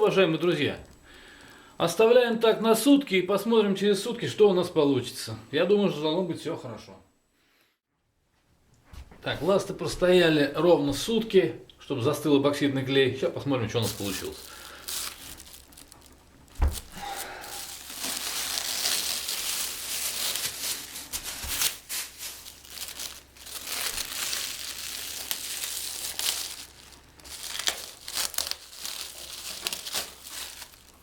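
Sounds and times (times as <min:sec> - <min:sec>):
wrapping crinkling and tearing: 0:13.7 - 0:31.0.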